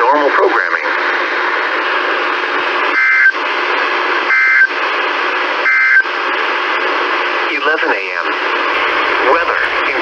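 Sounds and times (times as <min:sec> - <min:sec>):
radio static: 0:08.7 - 0:10.0.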